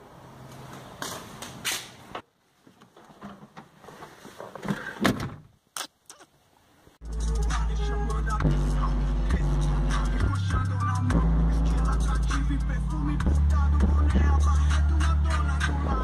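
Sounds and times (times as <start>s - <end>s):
loud bass-heavy music: 7.0s - 16.0s.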